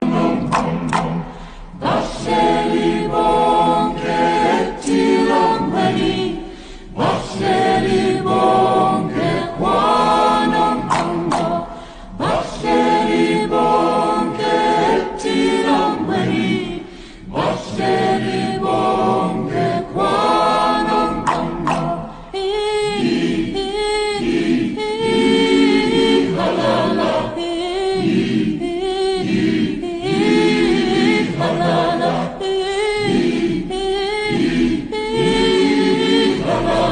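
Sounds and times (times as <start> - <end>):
choir singing in harmony: 0.0 - 36.9
tongue clicks: 0.4 - 1.3, 21.2 - 22.0.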